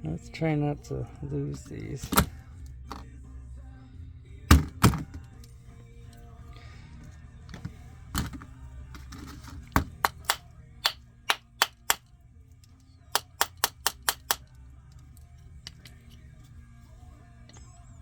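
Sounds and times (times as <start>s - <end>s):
metal hardware clicks: 9.0s - 12.0s, 12.7s - 16.2s.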